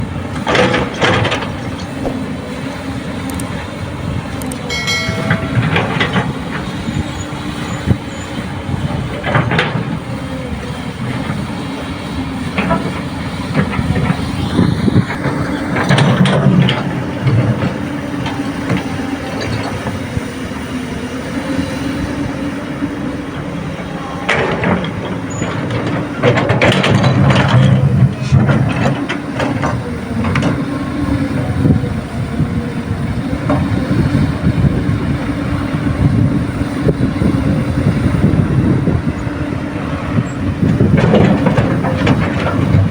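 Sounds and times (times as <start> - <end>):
excavator diesel engine: 0.0 - 42.9
rocks clanking on metal: 4.7 - 7.2, 24.3 - 30.6, 40.7 - 42.9.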